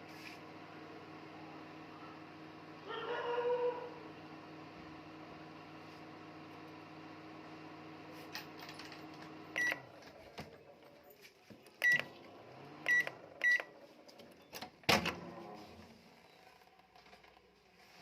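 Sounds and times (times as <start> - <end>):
microwave oven humming: 0.0 - 10.3, 11.7 - 17.4
microwave beeps: 9.5 - 9.9, 11.8 - 12.1, 12.9 - 13.8.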